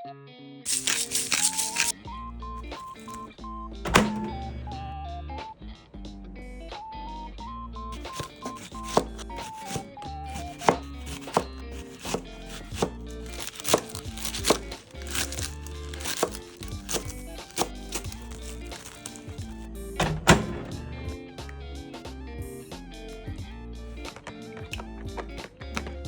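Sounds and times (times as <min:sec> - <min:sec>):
light background music: 0:00.7 - 0:26.0
knife chopping on cutting board: 0:08.0 - 0:19.3.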